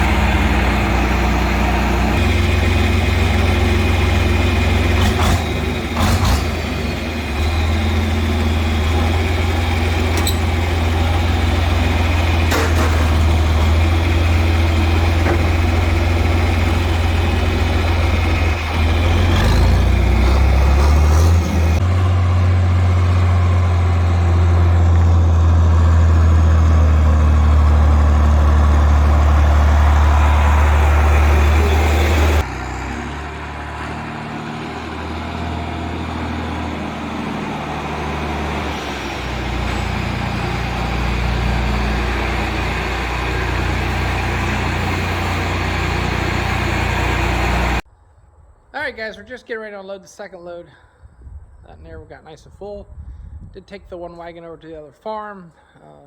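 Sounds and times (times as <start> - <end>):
tractor engine running: 0.0 - 47.9
knocks and rattles: 8.8 - 16.6.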